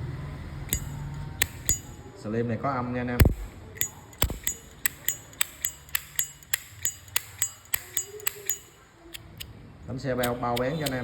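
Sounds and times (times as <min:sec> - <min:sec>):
lighter lid clinking: 0:00.7 - 0:02.0, 0:03.2 - 0:09.5.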